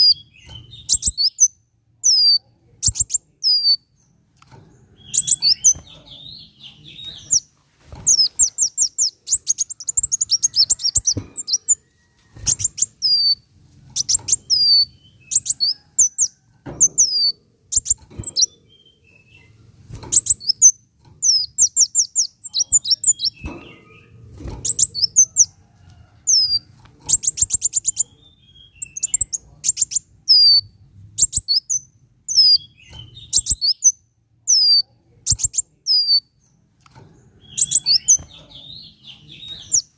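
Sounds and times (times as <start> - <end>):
sunbird chips and trills: 5.0 - 7.5, 8.1 - 11.8, 37.4 - 39.9.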